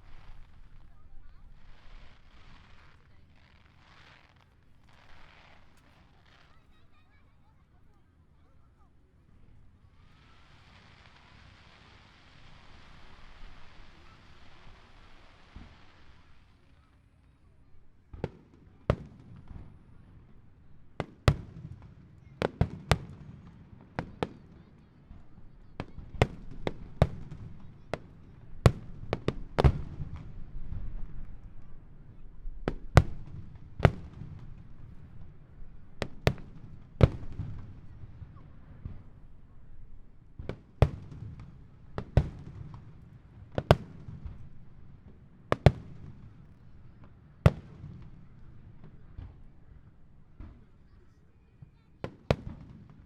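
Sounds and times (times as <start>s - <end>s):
fireworks bursting: 0.0s - 7.6s, 9.4s - 17.4s, 21.0s - 49.5s.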